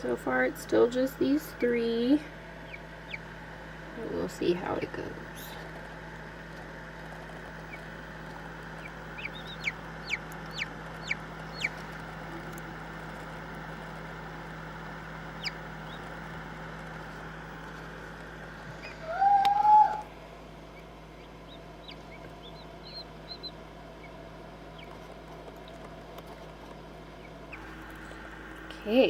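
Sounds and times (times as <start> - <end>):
steady background hum: 0.0 - 29.0
chicks peeping: 1.1 - 28.4
low rising chick call: 18.8 - 20.2.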